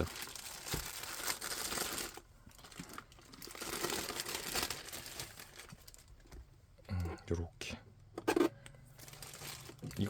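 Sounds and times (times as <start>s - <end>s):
plastic bag crinkling: 0.0s - 6.2s, 9.0s - 10.0s.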